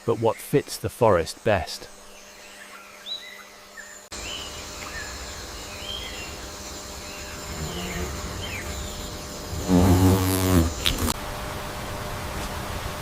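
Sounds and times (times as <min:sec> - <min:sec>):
birds chirping: 0:00.0 - 0:11.2
steady background hiss: 0:00.0 - 0:13.0
loud low-pitched call: 0:09.6 - 0:11.1.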